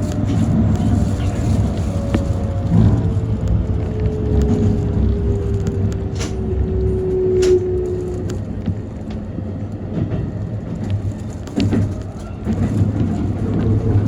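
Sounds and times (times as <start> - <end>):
train whine sliding down: 0.0 - 9.2
electric train rumble: 0.0 - 14.0.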